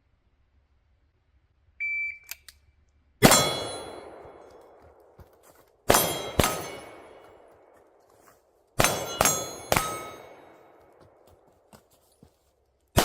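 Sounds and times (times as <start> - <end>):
steel plate clanging: 3.2 - 4.0, 5.9 - 7.1, 8.8 - 10.5
pistol shots: 3.2 - 5.0, 5.9 - 7.5, 8.8 - 10.9.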